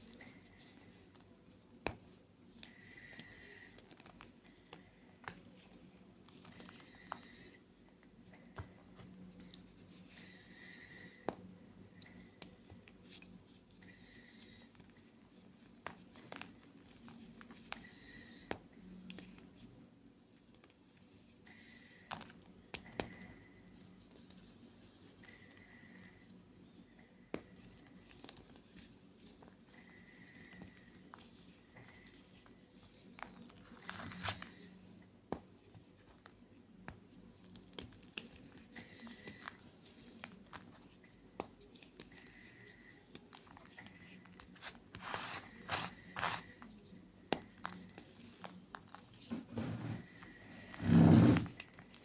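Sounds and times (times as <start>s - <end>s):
chalk crunching: 43.6s - 46.6s.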